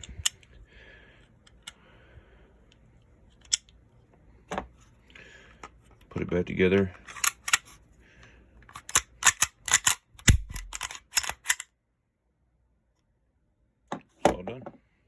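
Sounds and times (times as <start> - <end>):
metal clicks and clacks of pistol: 7.0 - 7.8, 8.6 - 11.7.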